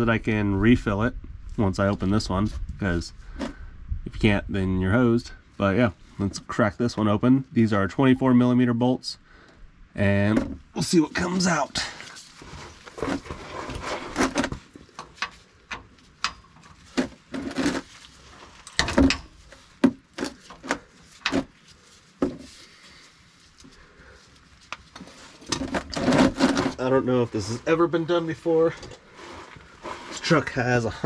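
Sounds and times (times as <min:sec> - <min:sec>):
rustling: 0:11.0 - 0:31.0.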